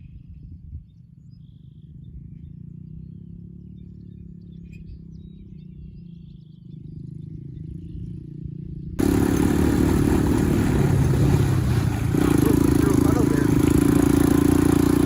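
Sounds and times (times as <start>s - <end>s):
atv engine running: 9.0s - 15.0s
loud rushing noise: 9.0s - 15.0s.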